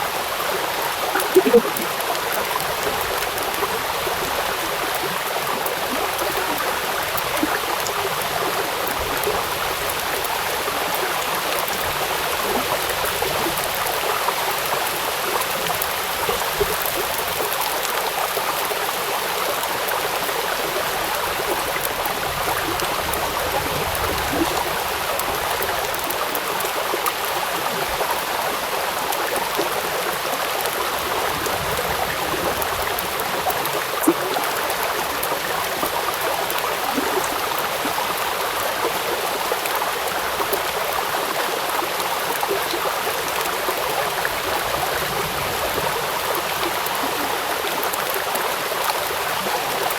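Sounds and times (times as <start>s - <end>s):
rain falling onto river: 0.0s - 49.9s.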